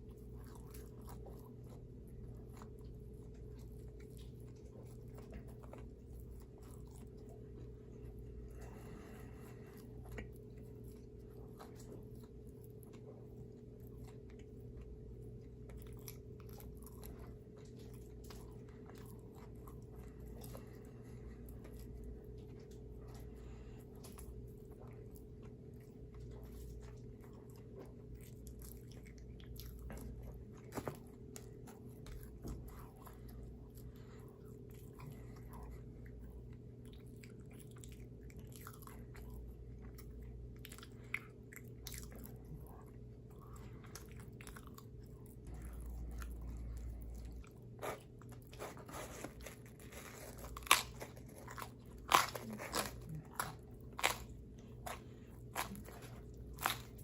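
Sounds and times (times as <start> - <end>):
chewing with mouth clicks: 0.0 - 57.0
faint steady hum: 0.0 - 57.0
crunching bites: 47.8 - 57.0.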